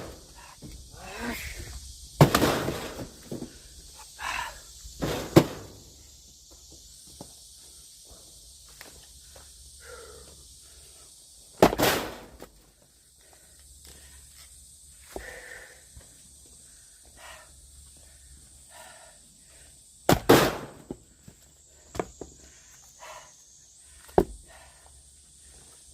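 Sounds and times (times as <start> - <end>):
axe splitting firewood: 2.2 - 3.4, 11.6 - 12.5, 20.1 - 21.0.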